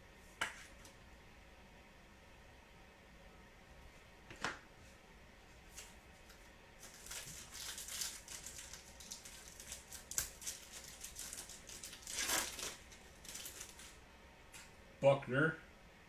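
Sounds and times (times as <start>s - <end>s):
plastic wrapper crinkling and tearing: 6.8s - 14.0s.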